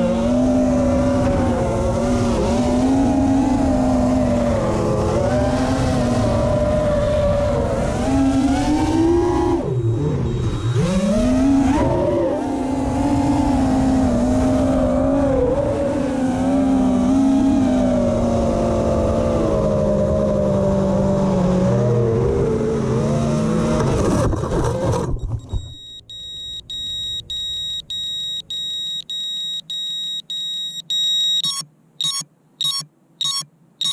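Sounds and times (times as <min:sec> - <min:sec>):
drone motors whining: 0:00.0 - 0:22.1, 0:24.9 - 0:33.9
high electronic beeps: 0:25.2 - 0:33.9.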